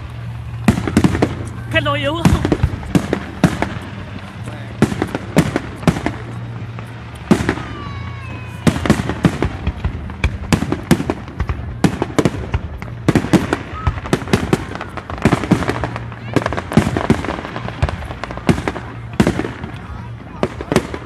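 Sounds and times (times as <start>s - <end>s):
firework whistle: 0.0s - 3.8s, 7.2s - 9.7s
fireworks bangs and crackles: 0.0s - 21.0s.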